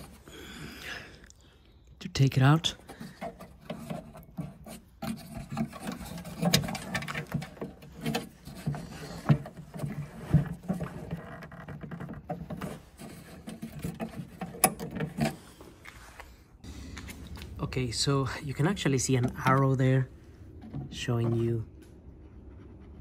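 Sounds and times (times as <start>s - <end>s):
plastic clicks and scraping: 2.8s - 15.9s.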